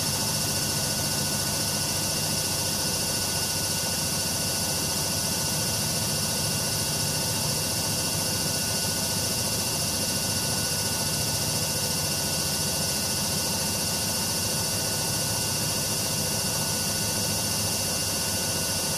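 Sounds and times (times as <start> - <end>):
washing machine spinning: 0.0 - 18.9.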